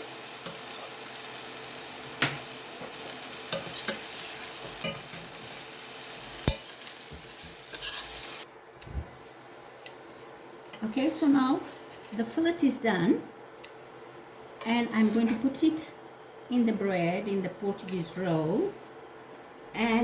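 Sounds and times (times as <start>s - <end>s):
steak sizzling in a pan: 0.0s - 8.4s
utensil scraping a pan: 6.3s - 8.4s.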